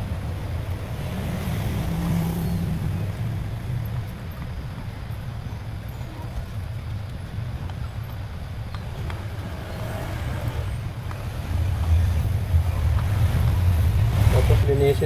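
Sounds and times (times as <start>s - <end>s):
steady low rumble: 6.4s - 15.0s.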